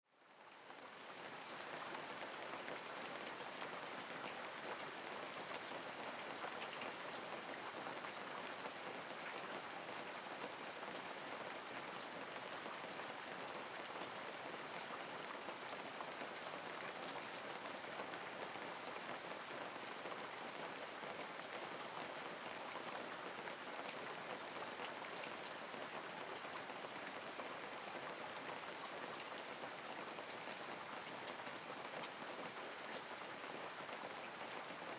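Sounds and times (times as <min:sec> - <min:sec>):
light steady rain: 0:00.0 - 0:34.9.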